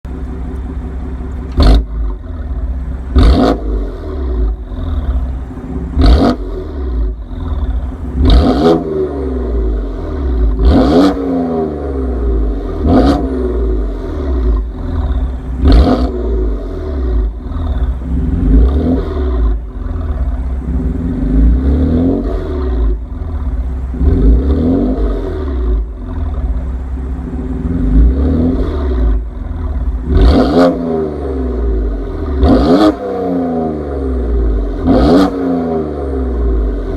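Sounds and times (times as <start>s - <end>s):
exhaust crack: 0.1s - 36.9s
car engine revving: 0.2s - 36.9s.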